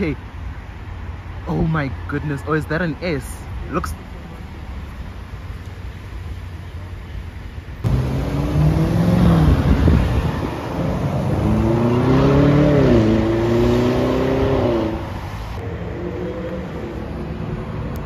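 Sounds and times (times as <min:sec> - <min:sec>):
car engine accelerating hard: 0:07.8 - 0:15.2.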